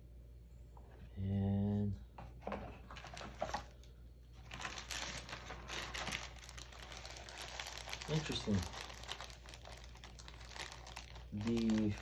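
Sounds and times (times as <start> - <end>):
plastic packaging crinkling: 2.8 - 12.0.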